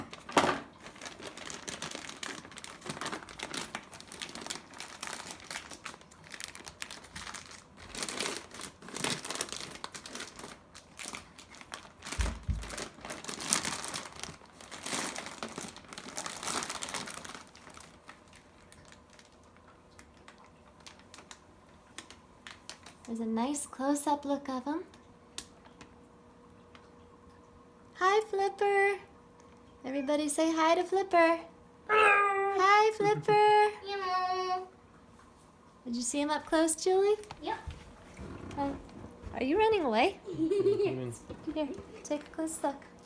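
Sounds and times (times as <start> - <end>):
packaging crinkling and tearing: 0.0 - 23.1.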